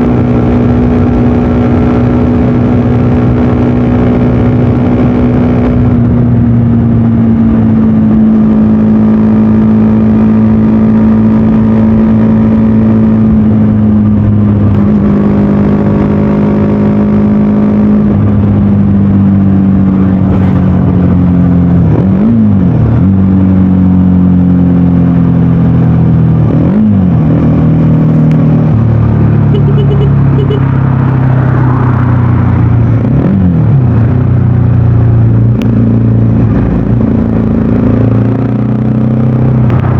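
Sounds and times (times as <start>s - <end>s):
motorcycle engine running: 0.0s - 31.2s.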